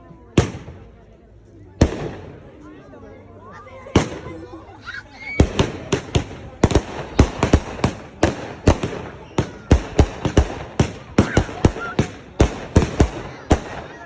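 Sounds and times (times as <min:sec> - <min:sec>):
fireworks bangs: 0:01.8 - 0:02.6, 0:03.9 - 0:04.4, 0:05.4 - 0:14.0.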